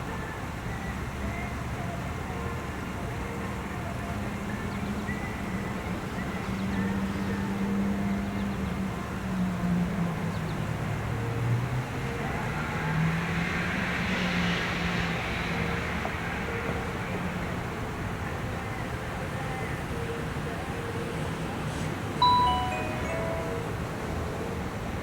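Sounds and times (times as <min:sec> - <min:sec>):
vehicle engines humming: 0:00.0 - 0:25.0
car passing by: 0:05.7 - 0:25.0.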